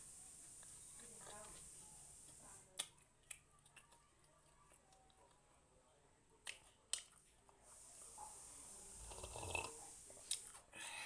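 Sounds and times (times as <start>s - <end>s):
breathing: 10.7s - 11.0s.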